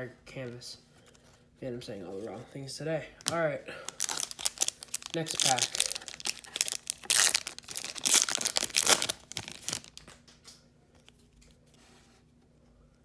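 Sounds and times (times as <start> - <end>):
wrapper tearing and crinkling: 3.9 - 10.2.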